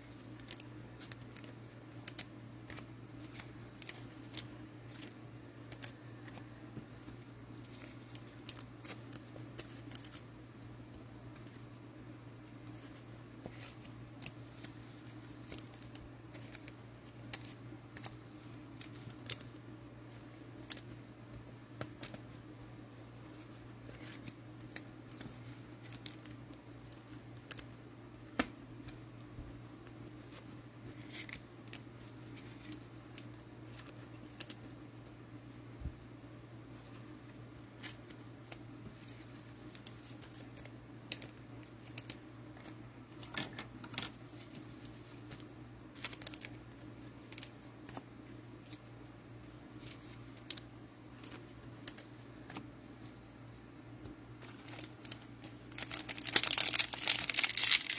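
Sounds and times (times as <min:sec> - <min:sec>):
low electrical hum: 0:00.0 - 0:57.9
cards clicking and scraping: 0:00.3 - 0:10.7.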